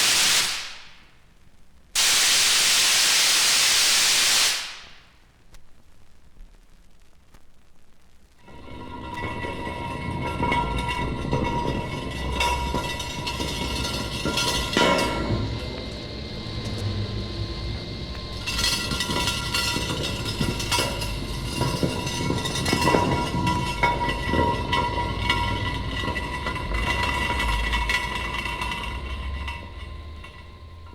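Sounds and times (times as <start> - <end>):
high ringing rail tones: 0.0 - 1.2, 2.0 - 5.2, 8.4 - 30.9
train rattling on rails: 8.4 - 30.9.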